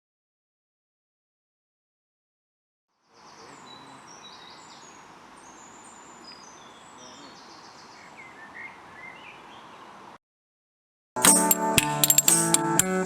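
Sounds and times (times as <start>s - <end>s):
small birds chirping: 3.0s - 10.0s.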